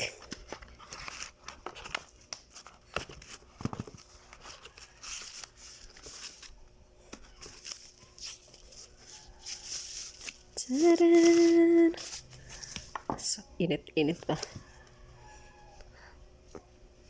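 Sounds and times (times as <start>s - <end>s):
packaging rustling and clicking: 0.2s - 13.2s.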